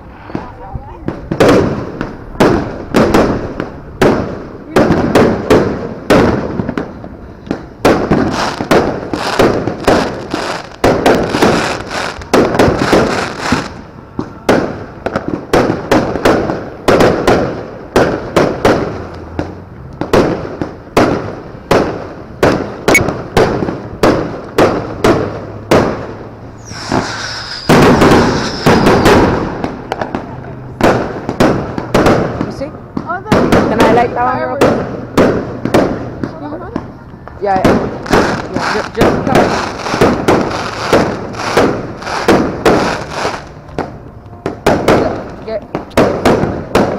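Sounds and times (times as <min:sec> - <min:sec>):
fireworks bangs: 0:00.0 - 0:46.9
fireworks crackling: 0:00.0 - 0:46.9
high whistle: 0:26.6 - 0:29.4.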